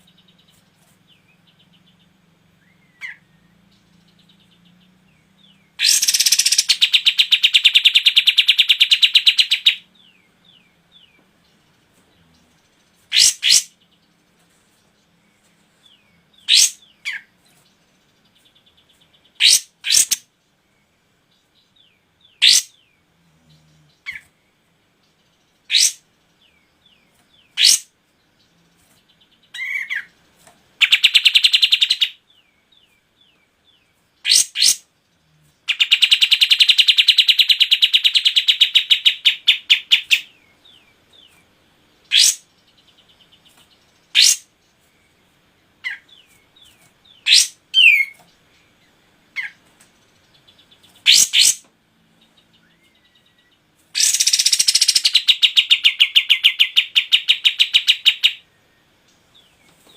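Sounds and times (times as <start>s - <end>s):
fast rolling bird trills: 2.8s - 10.1s, 53.9s - 58.5s
songbird sweeping calls: 5.8s - 9.8s, 13.1s - 13.7s, 16.4s - 17.3s, 42.1s - 42.5s, 44.1s - 44.5s, 51.0s - 51.6s, 54.0s - 58.4s.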